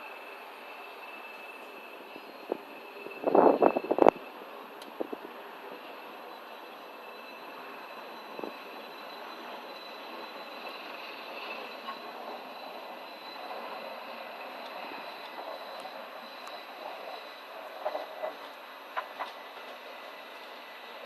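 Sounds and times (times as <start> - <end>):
thin high whine: 0.0 - 5.1
mechanical city noise: 0.0 - 21.0.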